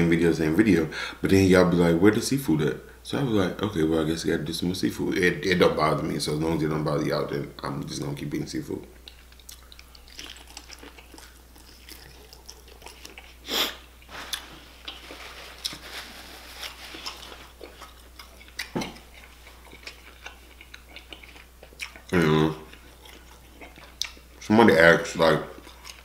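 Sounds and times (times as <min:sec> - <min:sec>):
person chewing and biting food: 0:09.0 - 0:24.4, 0:25.6 - 0:26.0.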